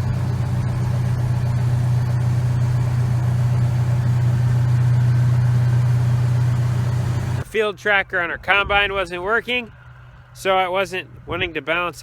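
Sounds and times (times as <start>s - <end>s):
engine idling: 0.0s - 7.5s.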